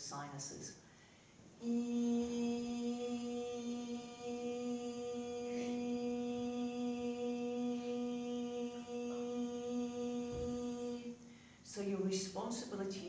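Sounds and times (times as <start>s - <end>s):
person humming a long note: 1.6s - 11.1s.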